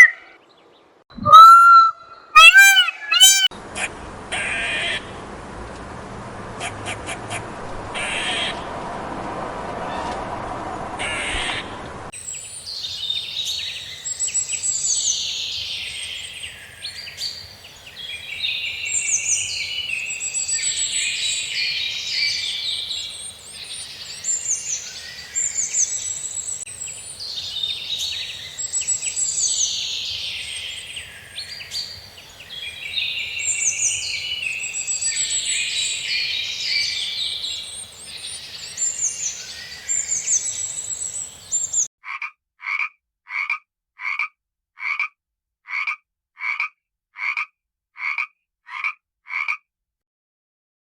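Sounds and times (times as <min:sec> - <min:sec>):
songbird warbling and trilling: 0:00.0 - 0:00.5, 0:01.1 - 0:03.5, 0:12.6 - 0:41.9.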